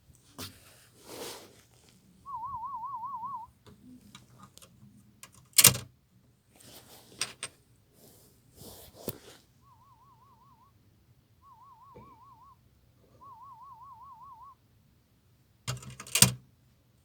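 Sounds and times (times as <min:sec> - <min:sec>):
warbling test tone: 0:02.3 - 0:03.5, 0:11.4 - 0:12.6, 0:13.2 - 0:14.6
light clicks and handling noises: 0:03.6 - 0:09.5, 0:15.7 - 0:16.4.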